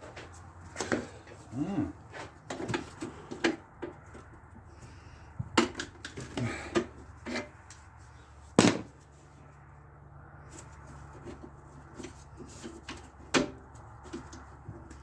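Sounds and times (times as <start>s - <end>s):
sharp loud knock: 8.6s - 8.9s.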